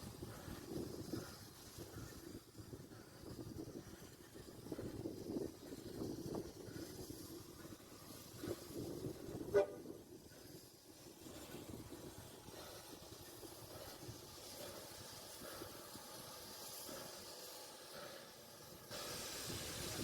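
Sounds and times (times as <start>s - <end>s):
railway background noise: 0.0s - 20.0s
locomotive whistle toot: 9.5s - 9.8s.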